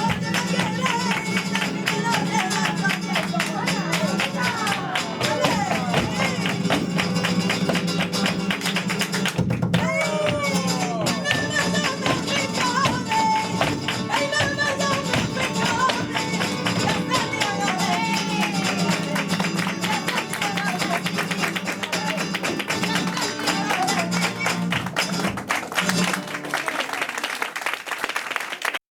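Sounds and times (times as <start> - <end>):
person singing: 0.0 - 7.0, 9.8 - 24.9
flamenco guitar: 0.0 - 28.7
rhythmic hand clapping: 0.0 - 28.8.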